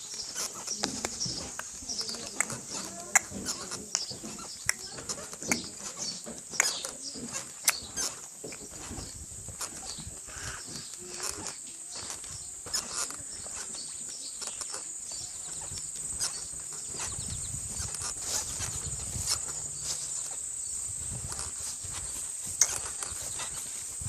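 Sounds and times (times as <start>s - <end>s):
low animal noises: 0.0s - 24.0s.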